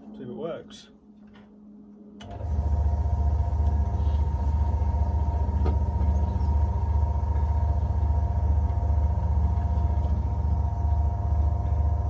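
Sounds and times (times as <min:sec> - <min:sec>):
drill press motor humming: 0:02.2 - 0:12.0.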